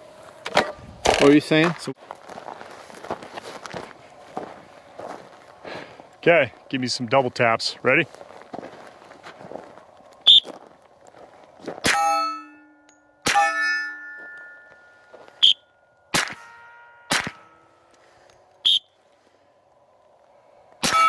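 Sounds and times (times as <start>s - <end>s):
steel target ringing: 11.8s - 17.9s
pistol shots: 16.1s - 17.6s.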